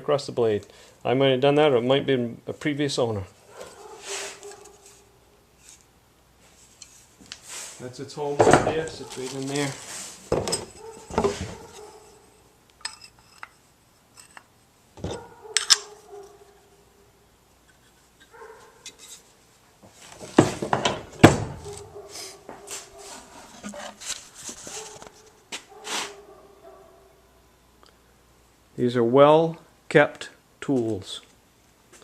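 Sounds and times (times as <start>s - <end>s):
tools scraping and rubbing: 3.4s - 16.7s, 17.6s - 20.9s, 21.6s - 26.4s
tools clattering in a tool box: 10.4s - 11.9s.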